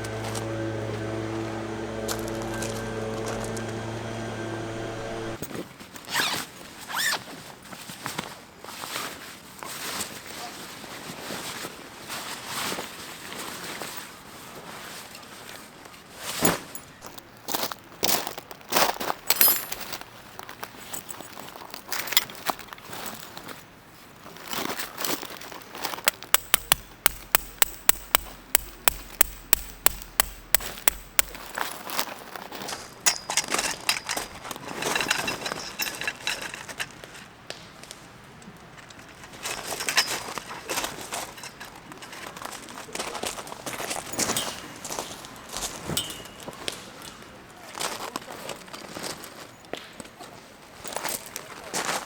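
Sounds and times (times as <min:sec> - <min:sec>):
short rasping strokes: 0:00.0 - 0:05.4
steady hum of held pitches: 0:00.0 - 0:05.4, 0:26.4 - 0:31.6
rustling of gear: 0:00.0 - 0:07.2, 0:24.5 - 0:37.3
tool striking something hard: 0:26.4 - 0:31.7, 0:33.1 - 0:34.3.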